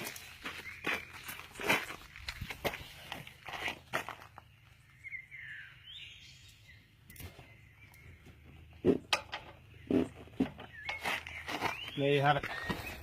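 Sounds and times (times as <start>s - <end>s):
bird chirping: 0.0s - 2.0s, 4.2s - 13.0s
footsteps: 0.0s - 4.4s.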